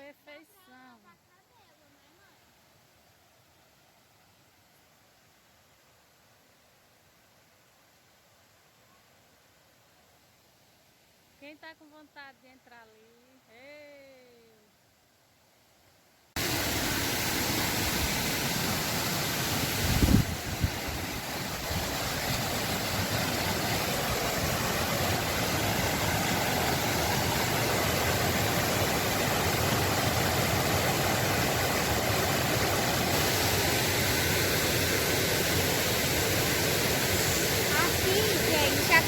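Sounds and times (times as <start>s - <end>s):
river water rushing: 16.4s - 39.0s.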